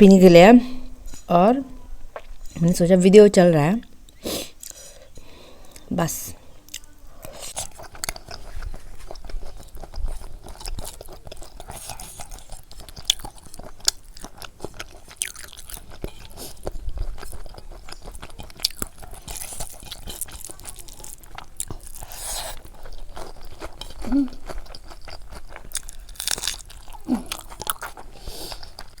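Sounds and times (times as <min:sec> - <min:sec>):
chewing and crunching: 0:06.6 - 0:29.0.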